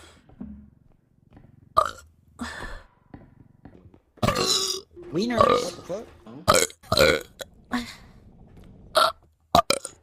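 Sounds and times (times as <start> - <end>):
person burping: 4.2 - 4.8, 5.4 - 5.8, 6.5 - 7.8, 9.0 - 10.0.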